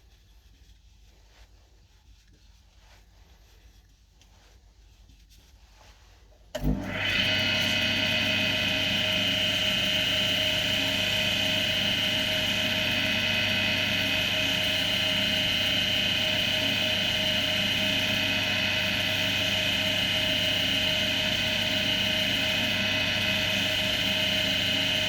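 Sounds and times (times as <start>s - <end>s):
lathe motor humming with whine: 6.6s - 25.0s.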